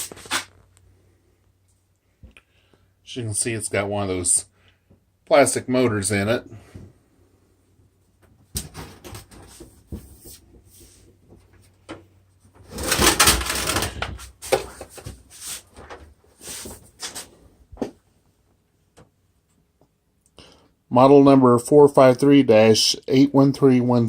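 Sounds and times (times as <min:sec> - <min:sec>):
plastic scraping and rubbing: 0:12.6 - 0:17.3.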